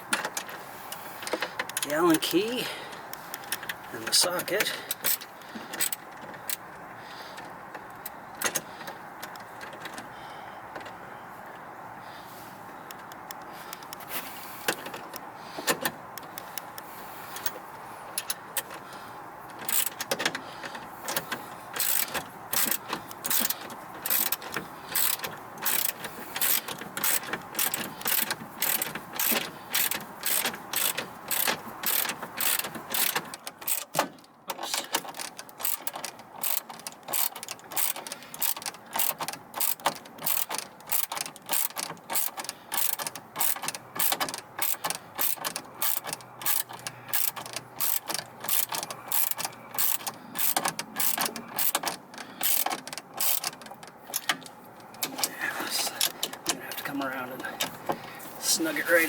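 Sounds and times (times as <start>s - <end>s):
ratchet wrench clicking: 19.6s - 20.2s, 21.1s - 34.0s, 34.6s - 54.4s.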